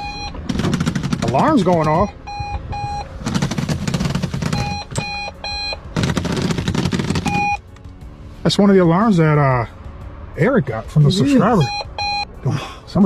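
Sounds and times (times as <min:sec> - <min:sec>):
alarm clock beeping and ringing: 0:11.5 - 0:12.2.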